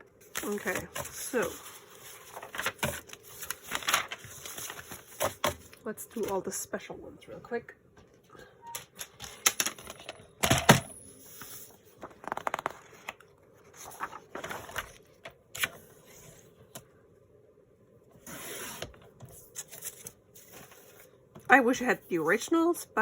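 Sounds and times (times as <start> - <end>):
paper rustling: 0.3 - 6.4, 11.3 - 16.4, 18.3 - 21.1.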